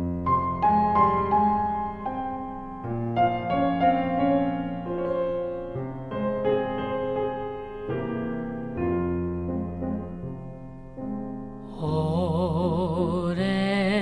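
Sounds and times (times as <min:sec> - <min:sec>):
slow piano melody: 0:00.0 - 0:14.0
person singing: 0:11.6 - 0:14.0.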